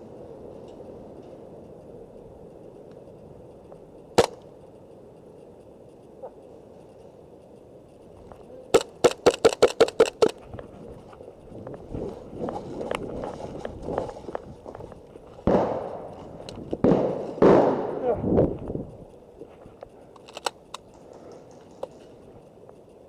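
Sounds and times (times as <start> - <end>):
airsoft pistol shots: 4.2 - 4.4, 16.8 - 18.1.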